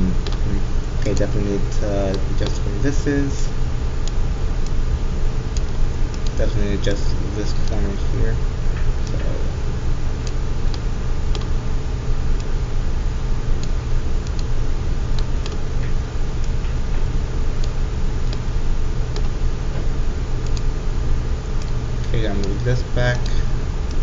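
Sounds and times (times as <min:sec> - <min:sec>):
steady low hum: 0:00.0 - 0:24.0
computer mouse clicking: 0:01.1 - 0:01.3, 0:02.1 - 0:02.6, 0:07.6 - 0:07.9, 0:10.2 - 0:11.5, 0:15.2 - 0:15.6, 0:17.6 - 0:18.4, 0:19.1 - 0:19.4, 0:20.4 - 0:20.7.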